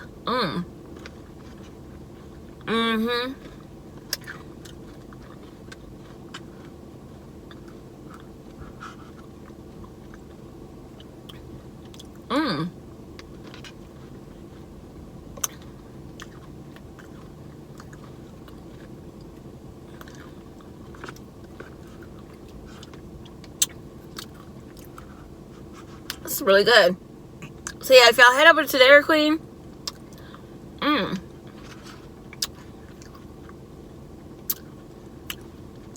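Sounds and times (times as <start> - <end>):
steady low hum: 0.0 - 35.9
soft chewing: 0.8 - 2.7, 3.4 - 26.3, 27.4 - 27.8, 29.6 - 30.6, 31.2 - 35.9
person humming mmm: 12.3 - 12.8, 30.8 - 31.2.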